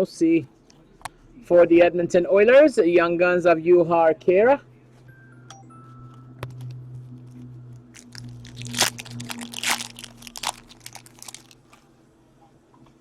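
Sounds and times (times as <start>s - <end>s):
card wrappers crinkling: 7.8s - 11.8s.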